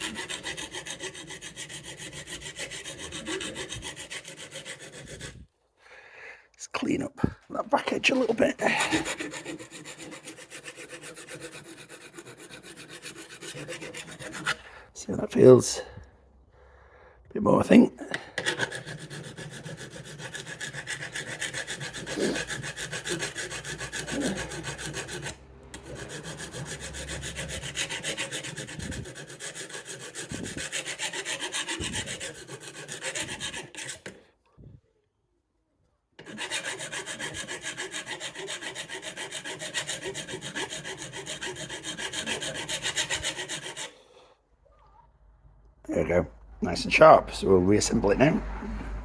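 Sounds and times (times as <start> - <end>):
hand file rasping on blade: 0.0 - 5.5, 8.0 - 14.7, 18.2 - 34.2, 36.2 - 44.3.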